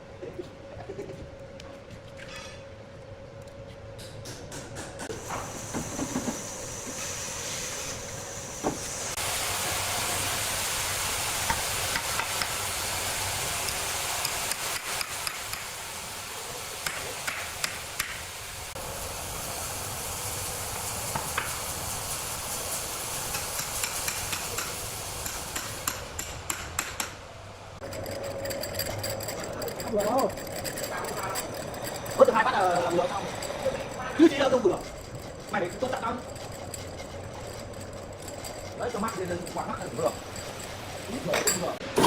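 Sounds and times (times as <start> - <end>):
saw rasping through wood: 27.8 - 40.4.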